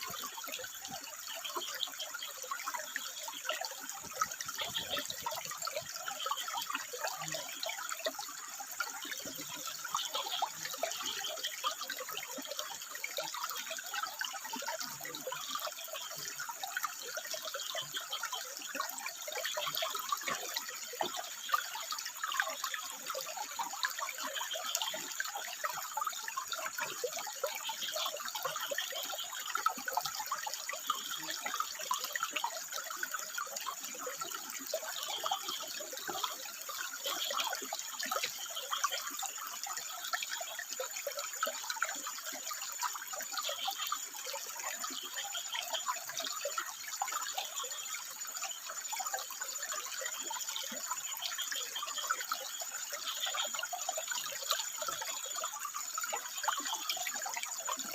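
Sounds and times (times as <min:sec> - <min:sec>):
water trickling over rocks: 0:00.0 - 0:57.9.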